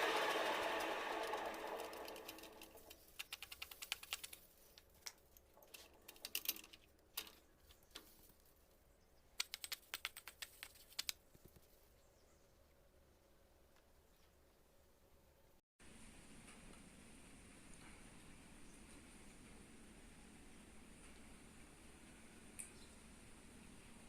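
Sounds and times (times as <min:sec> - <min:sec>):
quick light clicks and taps: 0:02.9 - 0:08.1, 0:09.4 - 0:11.7, 0:22.6 - 0:22.9.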